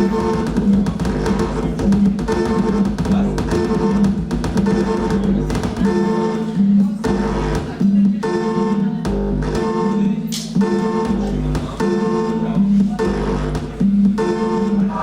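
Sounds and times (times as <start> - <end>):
held pitched notes: 0.0 - 15.0
clicking percussion: 6.8 - 15.0.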